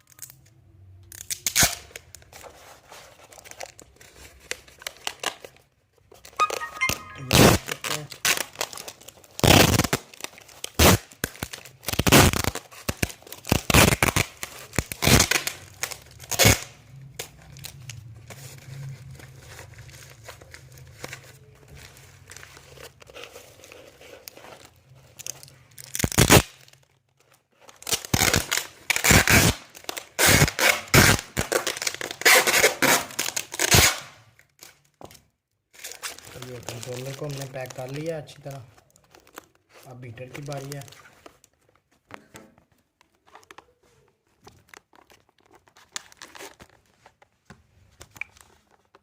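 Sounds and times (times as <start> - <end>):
tape tearing: 0.0 - 5.6, 6.2 - 17.4, 22.2 - 34.8, 44.5 - 47.2
wrapping material crinkling: 0.0 - 49.0.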